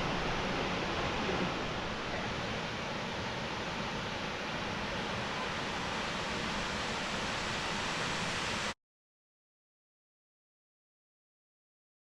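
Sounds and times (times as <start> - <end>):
waterfall roaring: 0.0 - 8.8.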